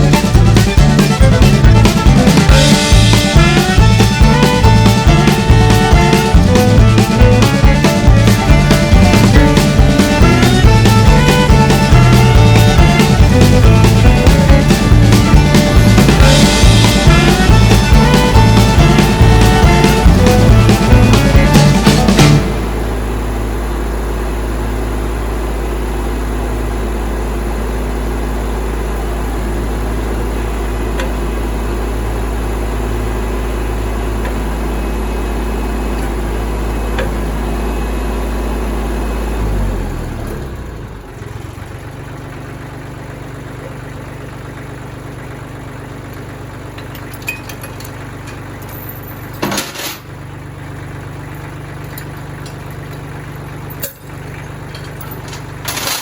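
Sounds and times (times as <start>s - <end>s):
tractor engine running: 0.0s - 56.0s
sharp metallic clinks: 53.7s - 56.0s.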